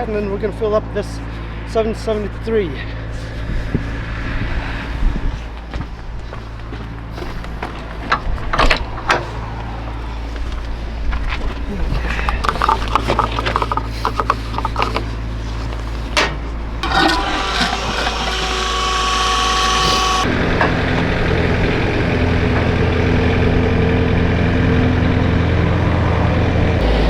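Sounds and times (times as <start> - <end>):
scraping and clicking handling: 10.3 - 20.2
engine idling: 11.8 - 27.0
steady whine: 14.2 - 26.9.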